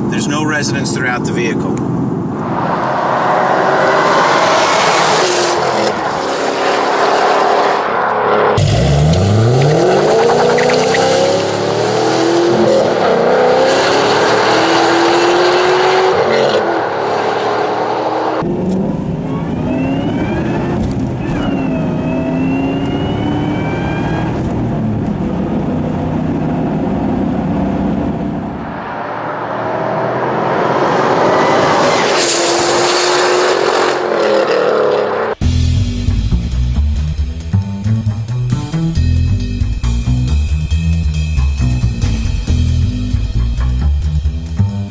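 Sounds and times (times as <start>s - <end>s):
car engine revving hard: 2.6s - 28.3s, 29.0s - 35.4s.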